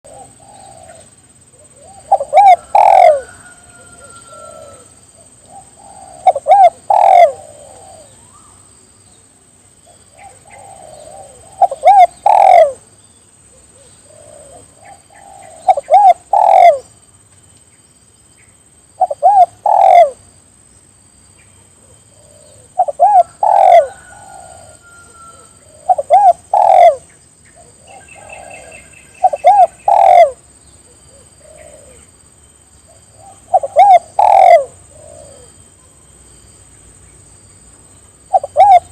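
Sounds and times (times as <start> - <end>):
dove cooing: 0.0 - 8.6, 10.1 - 12.8, 13.5 - 16.9, 19.0 - 20.2, 22.1 - 30.4, 31.1 - 32.1, 33.1 - 35.6, 38.3 - 38.9.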